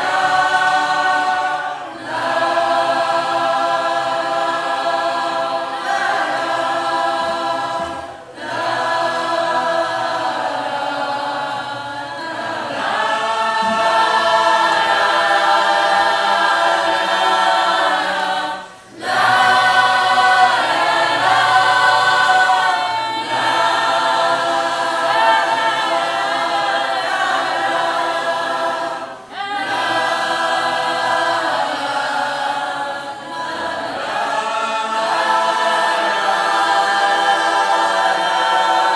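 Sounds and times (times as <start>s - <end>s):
group singing a cappella: 0.0s - 38.9s.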